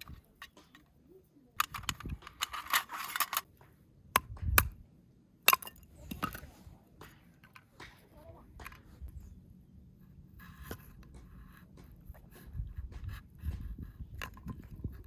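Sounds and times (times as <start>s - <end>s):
sharp clicks and knocks: 1.6s - 4.8s.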